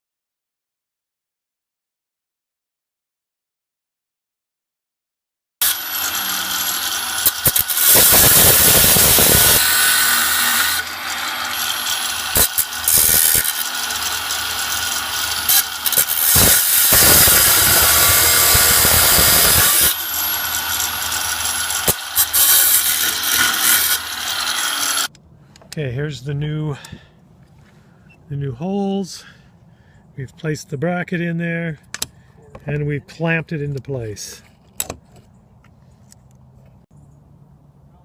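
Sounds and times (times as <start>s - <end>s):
power grinder grinding metal: 5.6s - 25.1s.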